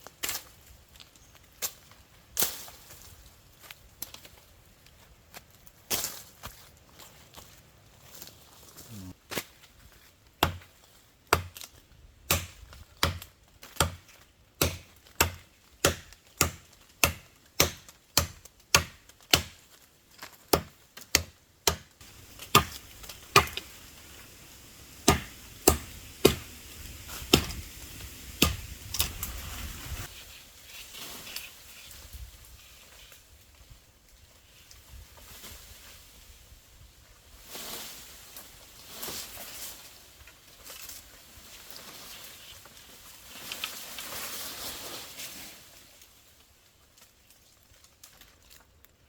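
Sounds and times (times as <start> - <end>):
tool chopping into wood: 10.4 - 10.7, 11.3 - 11.7, 12.3 - 19.6, 20.5 - 23.7, 25.0 - 26.5, 27.1 - 27.6, 28.3 - 29.1.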